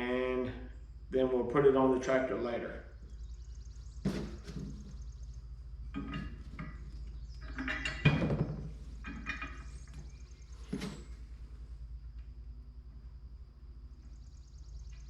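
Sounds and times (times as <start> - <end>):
steady low hum: 0.0 - 15.0
metal parts knocking and clanking: 4.0 - 5.0, 5.8 - 11.3.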